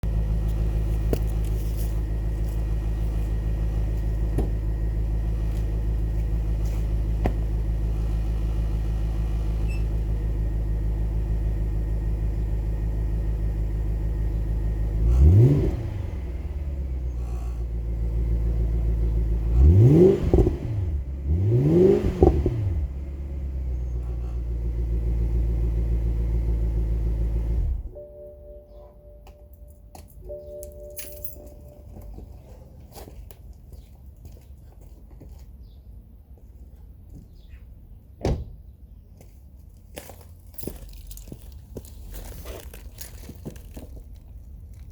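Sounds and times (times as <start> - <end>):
engine revs blipped: 0.0 - 29.6
car engine idling: 0.0 - 33.2, 39.8 - 44.9.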